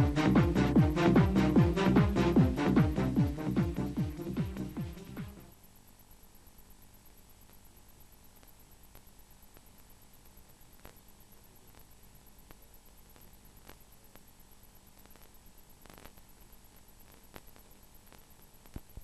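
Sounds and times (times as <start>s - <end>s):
faint electrical hum and hiss: 0.0s - 19.0s
faint clicks: 11.7s - 14.3s, 14.9s - 19.0s.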